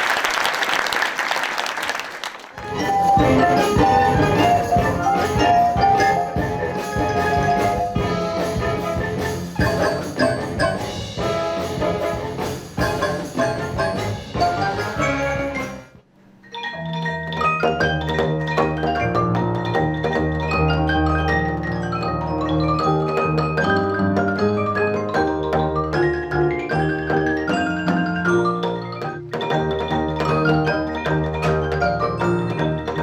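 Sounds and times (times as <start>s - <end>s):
steady drum strokes: 2.6s - 16.0s
band music with brass and marimba: 2.6s - 33.0s.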